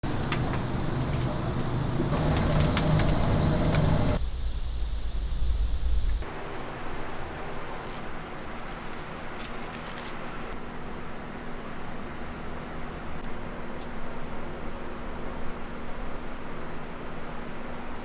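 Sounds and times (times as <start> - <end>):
street traffic rumble: 0.0 - 4.5, 7.7 - 13.8.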